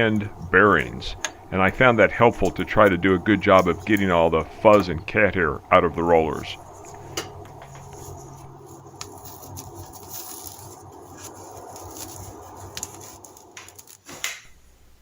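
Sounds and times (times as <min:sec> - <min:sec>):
vacuum brush roller being handled: 0:00.0 - 0:05.0, 0:06.4 - 0:14.4
low steady background noise: 0:00.0 - 0:15.0.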